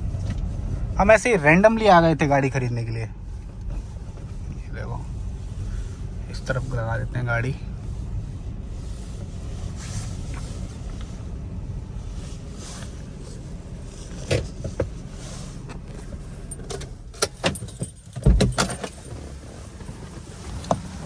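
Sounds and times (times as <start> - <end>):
car engine low rumble: 0.0 - 21.0.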